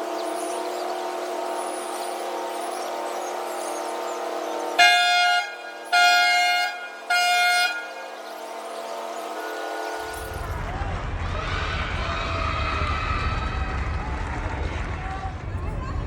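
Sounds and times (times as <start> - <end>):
ship's horn blasts: 0.2 - 10.7
steady hum: 9.0 - 16.0.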